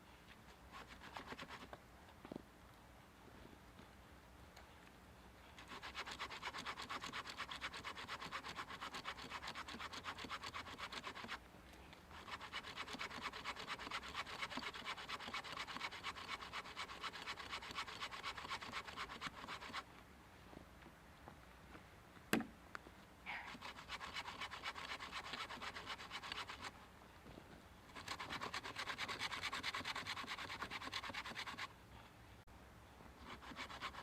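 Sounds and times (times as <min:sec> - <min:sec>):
handsaw rasping through log: 0:00.7 - 0:01.7, 0:05.6 - 0:11.4, 0:12.1 - 0:19.8, 0:23.4 - 0:26.8, 0:27.9 - 0:31.7, 0:33.2 - 0:34.0.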